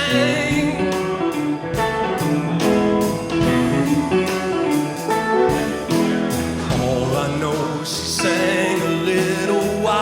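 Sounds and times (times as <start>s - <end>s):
person singing: 0.0s - 1.4s, 6.6s - 10.0s
guitar: 0.0s - 10.0s
rock band playing: 0.0s - 10.0s.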